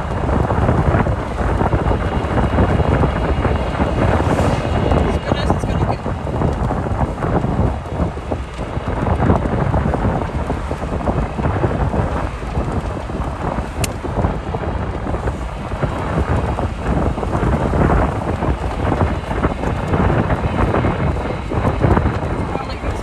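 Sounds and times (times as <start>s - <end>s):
sharp click: 13.7s - 14.0s.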